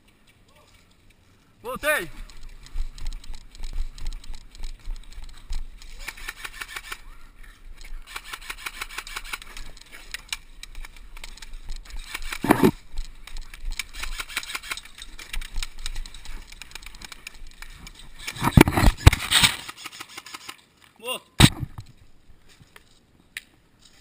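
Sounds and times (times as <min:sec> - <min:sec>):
airsoft guns firing bursts: 0:08.0 - 0:09.7.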